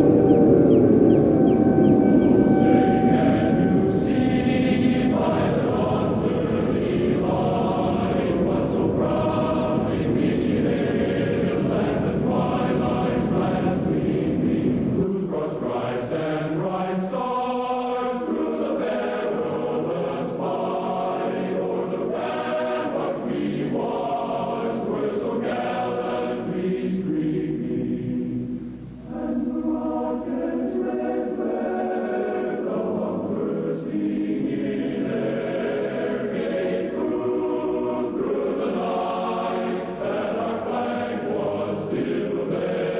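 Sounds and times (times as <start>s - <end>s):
low rumble: 0.0s - 15.4s
choir chanting: 0.0s - 42.9s.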